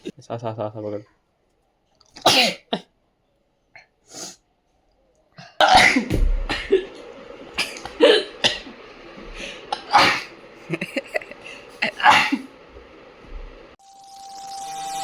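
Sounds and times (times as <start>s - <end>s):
loud sneezes: 2.2s - 2.9s, 5.4s - 6.9s, 9.7s - 10.4s, 11.8s - 12.5s.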